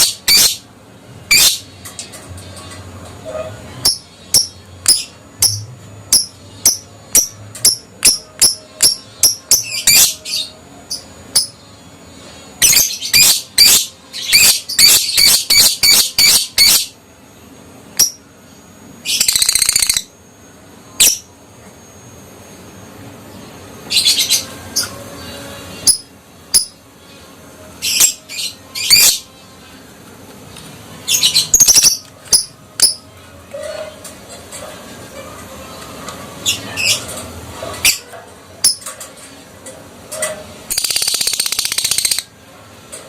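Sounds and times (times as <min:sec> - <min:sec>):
buzzing bird trill: 0:00.0 - 0:01.8, 0:03.2 - 0:29.8, 0:40.7 - 0:42.4.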